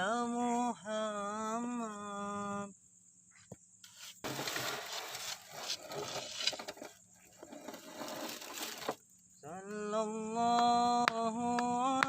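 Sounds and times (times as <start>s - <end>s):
paving blocks scraping and knocking: 3.9s - 9.0s.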